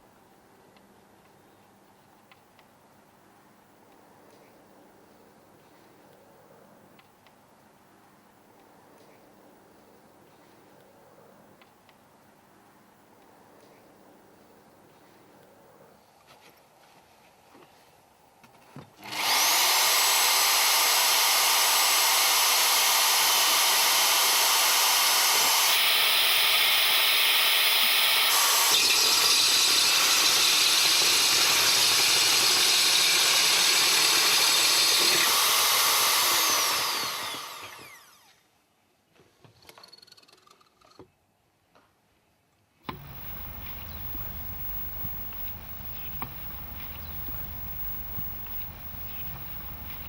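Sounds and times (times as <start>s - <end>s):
core drill motor whining: 19.0s - 38.4s, 42.9s - 50.0s.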